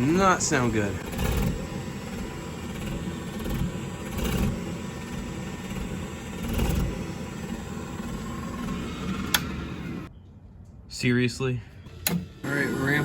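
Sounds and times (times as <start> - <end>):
gas boiler burner rumbling: 0.0 - 10.1.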